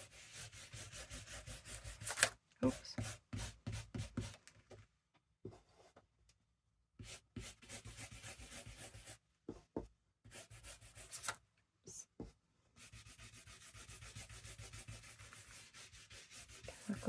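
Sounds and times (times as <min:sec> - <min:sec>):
ink applicator scrubbing on paper: 0:12.8 - 0:17.0.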